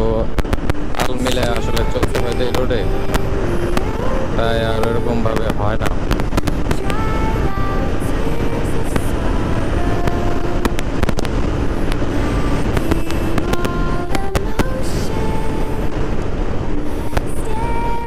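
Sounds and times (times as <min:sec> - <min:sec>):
road and wind rumble: 0:00.0 - 0:18.0.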